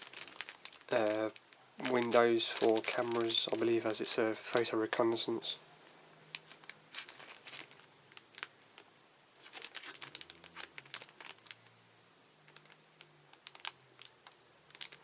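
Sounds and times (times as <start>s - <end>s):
plastic packaging crinkling: 0.0s - 5.4s, 6.3s - 11.7s, 12.5s - 15.0s.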